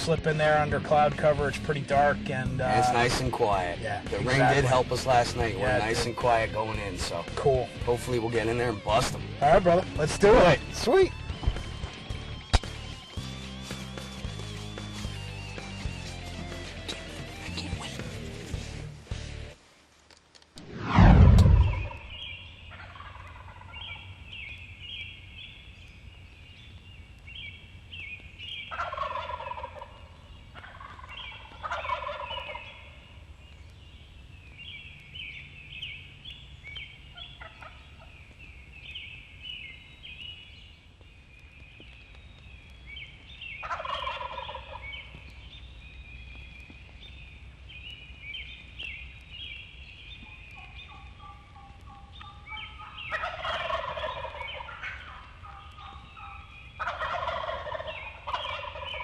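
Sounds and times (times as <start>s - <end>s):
small birds chirping: 0.0s - 19.2s, 21.5s - 59.0s
turkey gobbling: 22.7s - 24.1s, 28.7s - 33.0s, 37.1s - 38.1s, 43.6s - 45.2s, 50.2s - 59.0s.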